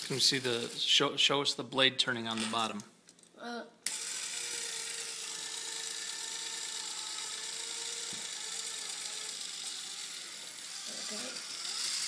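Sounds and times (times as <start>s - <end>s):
small electric motor whirring: 0.0s - 0.9s, 3.8s - 12.0s.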